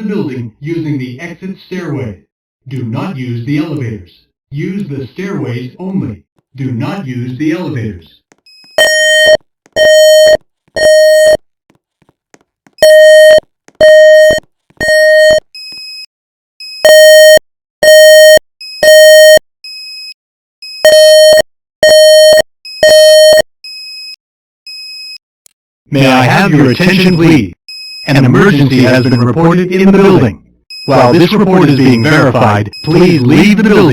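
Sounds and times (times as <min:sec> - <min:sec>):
fire alarm beeps: 0:08.5 - 0:11.4, 0:12.8 - 0:24.9, 0:30.7 - 0:33.9.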